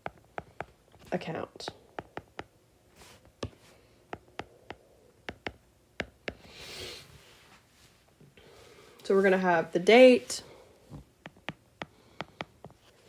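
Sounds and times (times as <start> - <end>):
pen tapping and clicking: 0.0 - 0.7, 3.4 - 6.4, 11.2 - 12.8.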